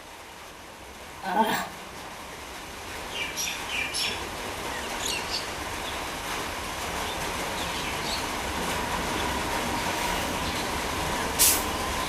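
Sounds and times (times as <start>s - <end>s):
birds chirping: 7.0s - 8.4s.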